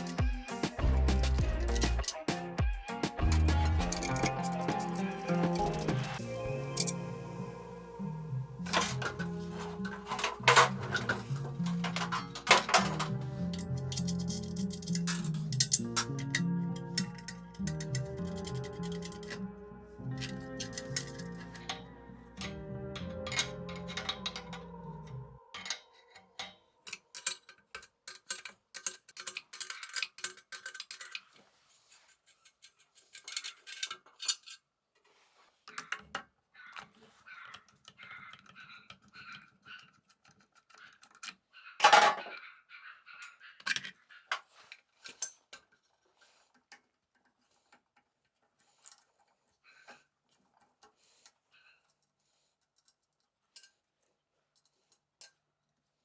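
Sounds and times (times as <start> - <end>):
metal parts clicking and clinking: 0.0 - 2.4, 3.0 - 6.2, 8.7 - 19.4, 20.1 - 31.4, 32.3 - 34.6, 38.4 - 42.4, 43.2 - 45.9, 46.5 - 51.0.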